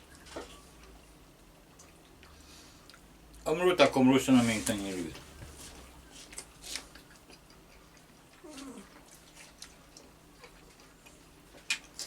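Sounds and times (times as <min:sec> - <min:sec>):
eating noises: 0:00.8 - 0:03.4, 0:05.2 - 0:12.0.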